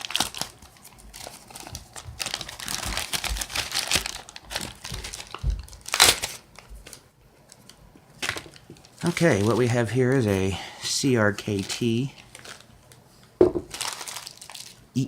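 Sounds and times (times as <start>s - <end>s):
packaging crinkling and tearing: 0.0s - 10.6s, 11.3s - 13.0s, 13.6s - 14.8s.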